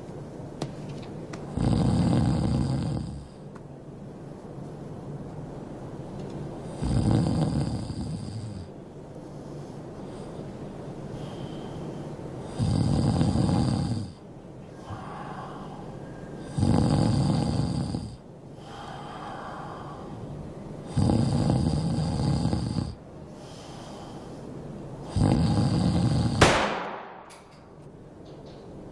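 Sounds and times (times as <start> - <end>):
man snoring loudly: 1.5 - 3.4, 6.7 - 8.7, 12.5 - 14.2, 16.5 - 18.8, 20.8 - 23.0, 25.0 - 26.4
sudden sharp bang: 26.4 - 27.4.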